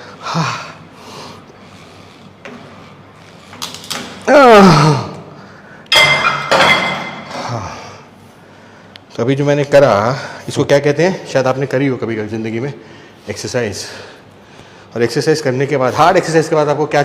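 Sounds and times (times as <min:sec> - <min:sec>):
loud groan: 0:04.3 - 0:05.3
man grunting with effort: 0:04.3 - 0:05.3.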